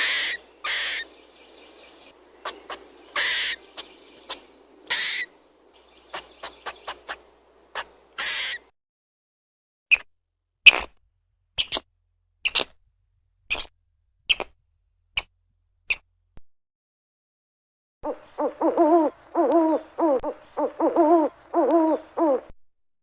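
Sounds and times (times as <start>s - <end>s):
owl hooting: 0.0s - 8.7s, 18.0s - 22.5s
short sharp squeaks: 11.6s - 12.8s.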